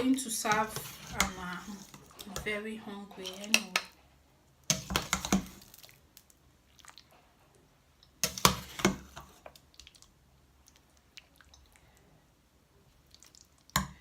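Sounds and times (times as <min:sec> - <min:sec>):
utensils scraping pot and plate: 0:00.5 - 0:02.0.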